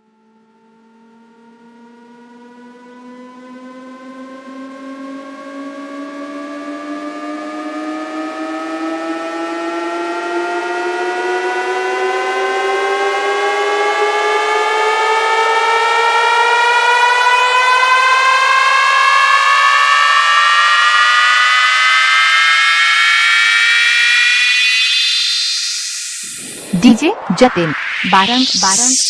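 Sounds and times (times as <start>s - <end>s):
electronic riser tones climbing: 22.1s - 29.0s.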